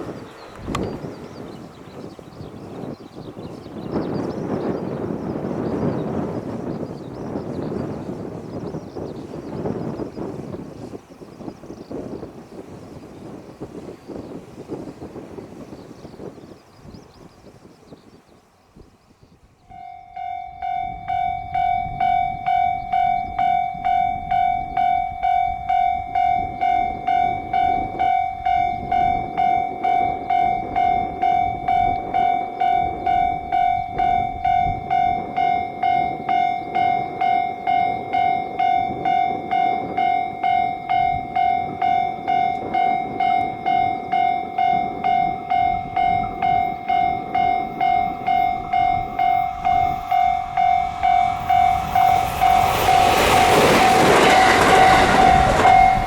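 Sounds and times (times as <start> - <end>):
level-crossing warning bell: 0.0 - 11.0, 19.7 - 56.0
low rumble: 45.6 - 56.0.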